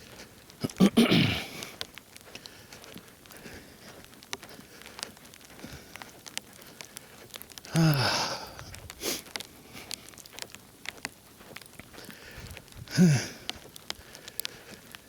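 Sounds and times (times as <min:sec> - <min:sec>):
footsteps crunching in snow: 0:00.0 - 0:15.0
person exhaling grunt: 0:00.6 - 0:01.6, 0:07.7 - 0:09.2, 0:12.9 - 0:13.4
person sniffing: 0:07.7 - 0:09.3.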